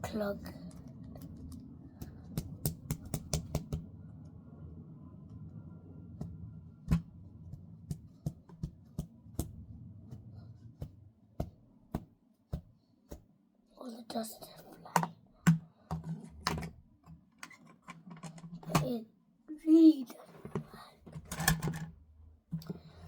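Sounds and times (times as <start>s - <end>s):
plastic vacuum parts clicking: 20.5s - 21.9s.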